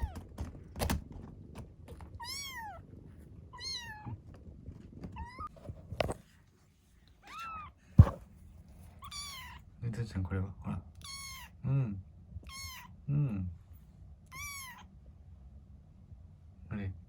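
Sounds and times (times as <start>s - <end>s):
kitten mewing: 2.1s - 2.8s, 3.5s - 4.3s, 5.0s - 5.5s, 7.2s - 8.2s, 9.0s - 9.6s, 10.9s - 11.6s, 12.4s - 12.9s, 14.3s - 14.9s.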